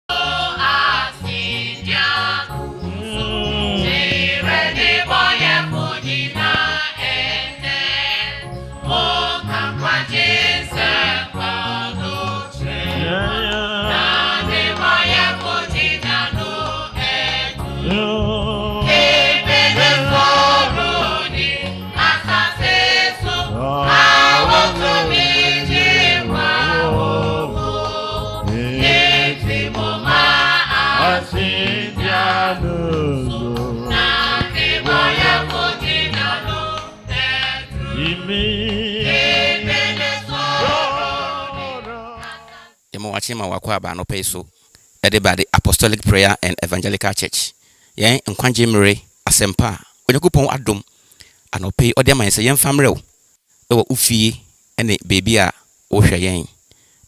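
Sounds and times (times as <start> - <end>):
gospel choir singing: 0.1 - 42.8
steady backing beat: 13.9 - 42.6.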